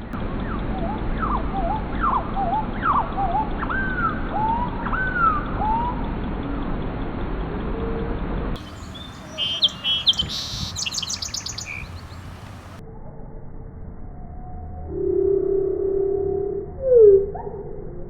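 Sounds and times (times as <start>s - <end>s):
bird chirping: 8.6s - 12.8s
low background noise: 8.6s - 12.8s.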